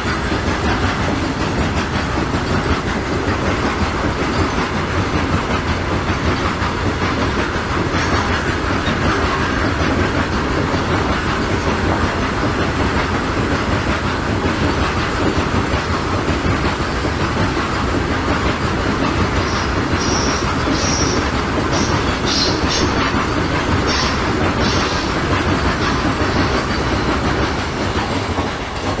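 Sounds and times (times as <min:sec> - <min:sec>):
train wagons rolling past: 0:00.0 - 0:29.0
wheels clacking over rail joints: 0:00.0 - 0:29.0
high wheel squeals: 0:19.3 - 0:23.1.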